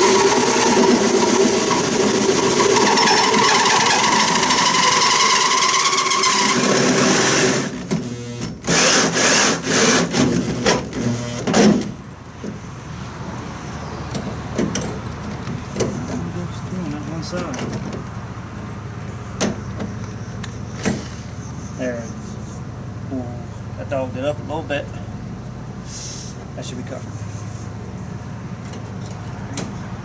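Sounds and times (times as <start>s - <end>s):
power drill cutting sheet metal: 0.0s - 11.8s.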